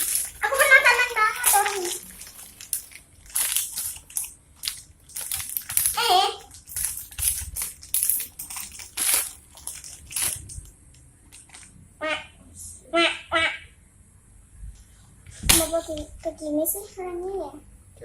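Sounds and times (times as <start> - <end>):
plastic wrapping crinkling: 0.0 - 10.7.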